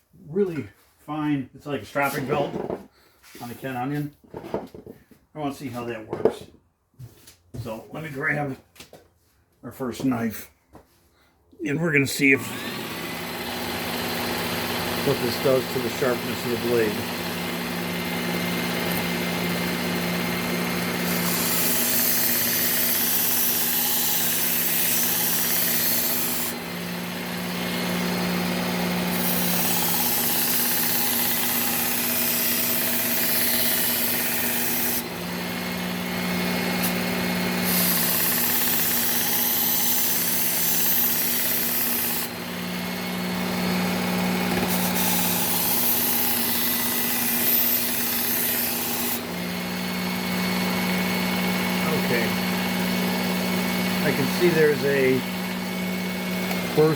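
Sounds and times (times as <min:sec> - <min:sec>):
sharpener motor hum: 0:12.4 - 0:56.9.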